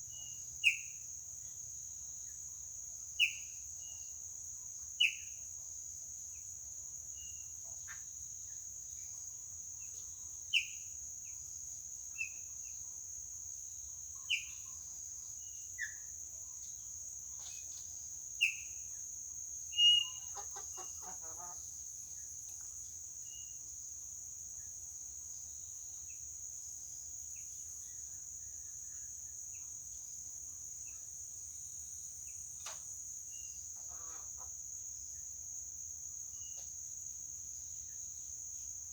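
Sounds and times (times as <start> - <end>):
insect buzz: 0.0 - 38.9
rapid chattering bird call: 19.9 - 21.6.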